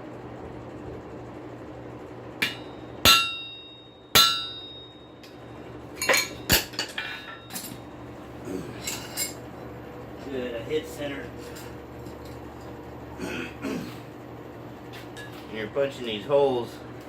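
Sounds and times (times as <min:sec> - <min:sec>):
hammer blows on anvil: 0:02.4 - 0:05.4.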